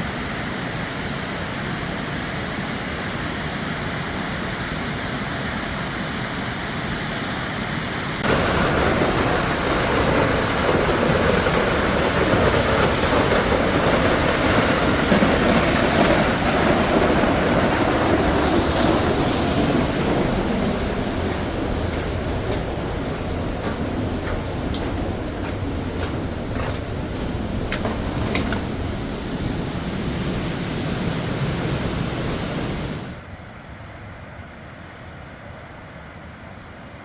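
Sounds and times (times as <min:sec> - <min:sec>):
falling water rushing: 0:08.2 - 0:33.2.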